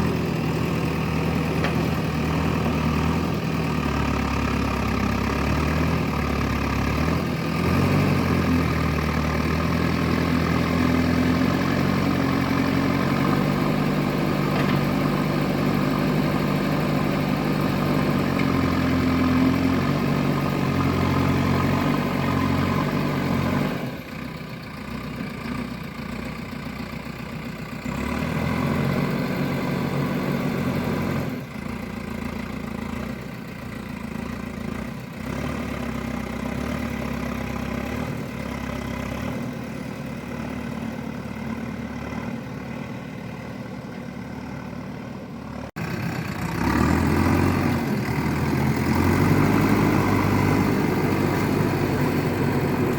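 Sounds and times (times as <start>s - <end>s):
excavator diesel engine: 0.0s - 52.9s.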